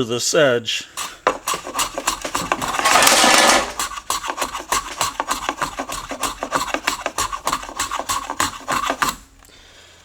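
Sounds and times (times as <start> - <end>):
hand plane scraping wood: 0.9 - 9.4.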